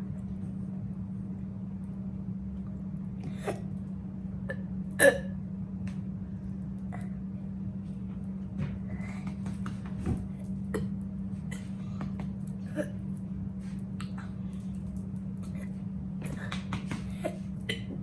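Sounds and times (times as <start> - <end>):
low background hum: 0.0 - 18.0
woman burping: 4.5 - 5.4.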